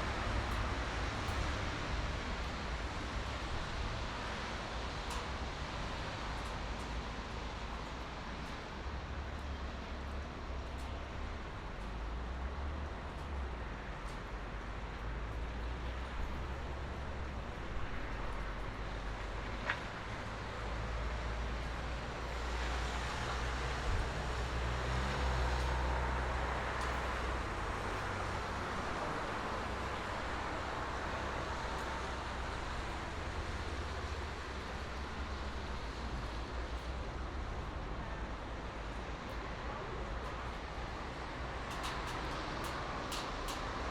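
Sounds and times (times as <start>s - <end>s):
highway traffic rumble: 0.0s - 43.9s.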